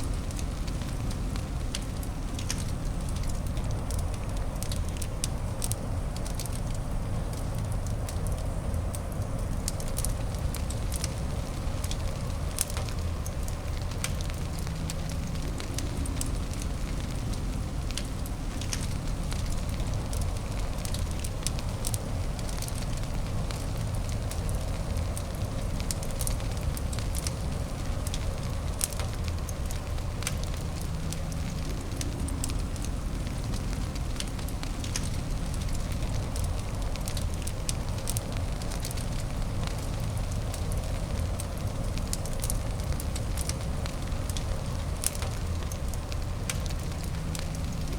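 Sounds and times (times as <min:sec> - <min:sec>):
fireplace crackling and popping: 0:00.0 - 0:47.9
low white-noise hiss: 0:00.0 - 0:47.9.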